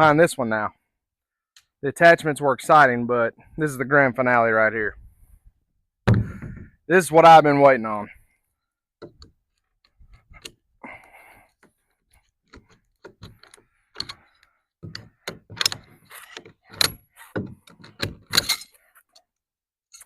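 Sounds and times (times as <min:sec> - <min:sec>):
knocks and clicks handling crate: 0:14.8 - 0:18.5.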